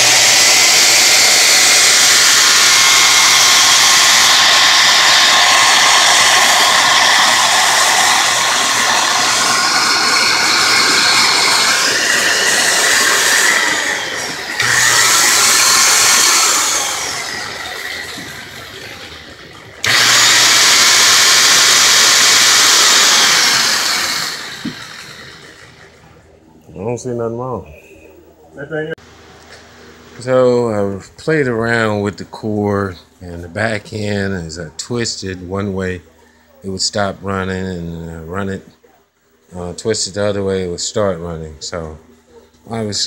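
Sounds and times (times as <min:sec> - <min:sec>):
electric grinder motor running: 0:00.0 - 0:26.0.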